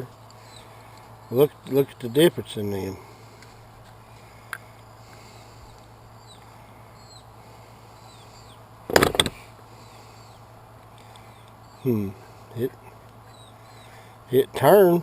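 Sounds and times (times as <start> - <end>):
faint bird chirps: 5.2 - 8.7, 11.1 - 12.3, 13.2 - 14.2
hard knocks of metal parts: 8.9 - 9.4.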